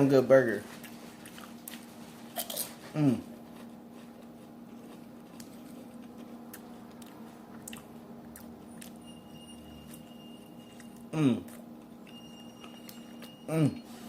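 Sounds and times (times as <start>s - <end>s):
person chewing: 0.7s - 9.0s, 10.7s - 13.6s.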